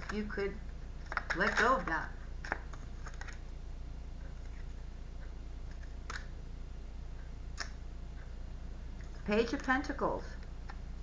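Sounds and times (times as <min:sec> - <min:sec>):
steady low hum: 0:00.0 - 0:11.0
cards tapping and clicking: 0:01.0 - 0:03.4.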